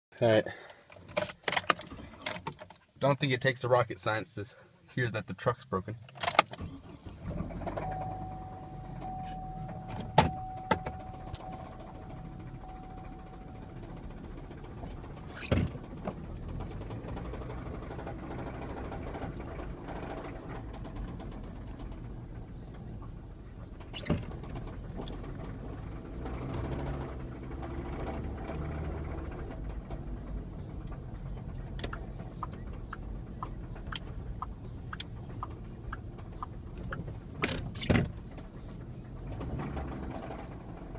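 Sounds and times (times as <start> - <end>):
thin steady whine: 7.8 - 14.2
engine knocking: 10.4 - 37.4, 38.1 - 40.9
sharp clicks: 31.6 - 37.2.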